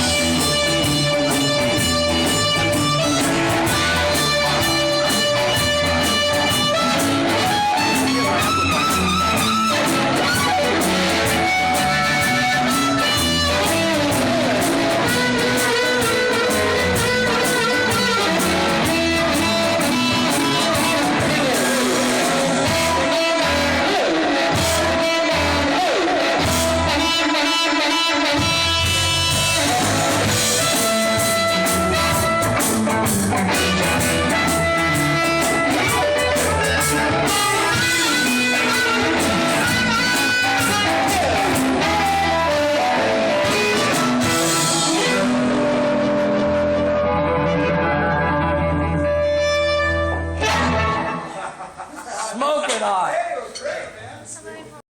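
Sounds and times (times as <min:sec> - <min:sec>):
blues band playing: 0:00.0 - 0:52.2.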